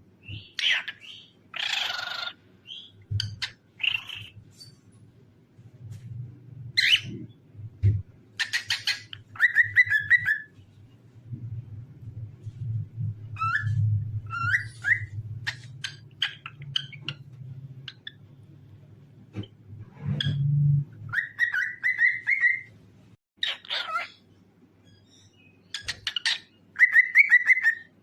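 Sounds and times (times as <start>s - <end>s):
low steady hum: 0.0s - 23.2s
cockatiel whistling and chirping: 0.2s - 4.3s, 6.8s - 7.2s, 8.4s - 10.5s, 13.3s - 17.2s, 21.1s - 22.7s, 24.9s - 27.9s.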